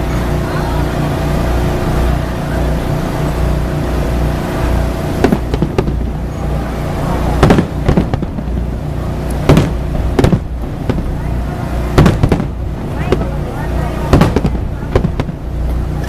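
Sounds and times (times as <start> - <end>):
low rumble: 0.0 - 16.0
fireworks bangs: 4.3 - 16.0.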